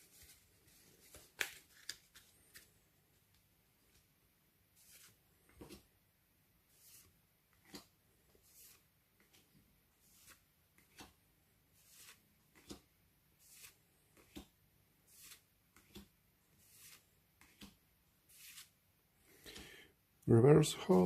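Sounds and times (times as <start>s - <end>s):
cards sliding and tapping: 0.1s - 2.8s, 6.7s - 11.2s, 11.8s - 19.7s.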